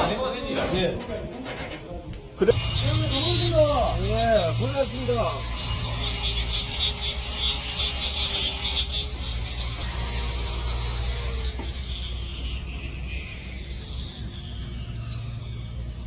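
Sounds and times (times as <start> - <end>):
low motor hum: 8.8 - 16.0.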